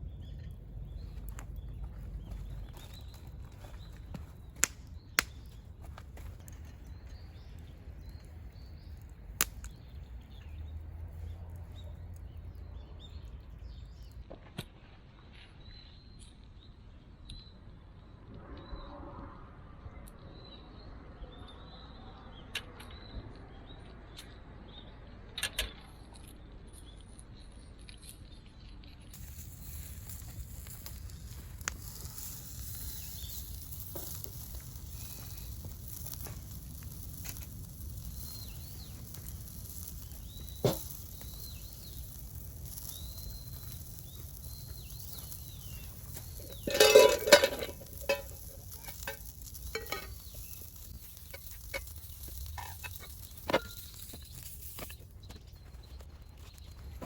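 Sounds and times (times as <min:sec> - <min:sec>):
campfire crackling and popping: 0:00.0 - 0:14.2, 0:29.1 - 0:57.0
small birds chirping: 0:00.0 - 0:14.3, 0:26.7 - 0:57.0.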